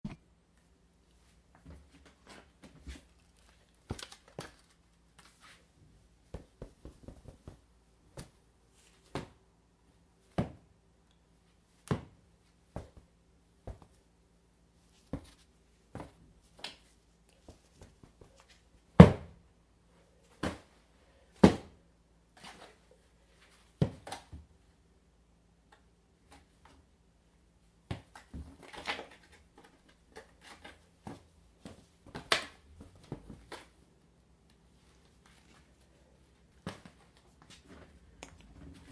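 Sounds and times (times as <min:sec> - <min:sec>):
hand hitting stuffed animals: 0:06.2 - 0:08.4, 0:11.8 - 0:14.0, 0:15.0 - 0:16.8.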